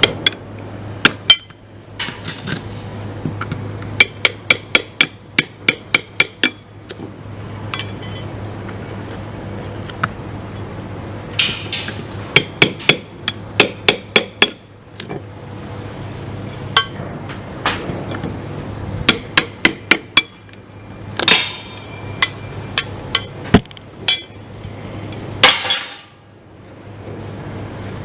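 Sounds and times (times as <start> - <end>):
steady low hum: 0.0 - 28.0
hammer strikes: 4.0 - 6.7, 11.4 - 14.6, 16.8 - 17.9, 19.1 - 20.4, 21.2 - 24.4, 25.4 - 26.2.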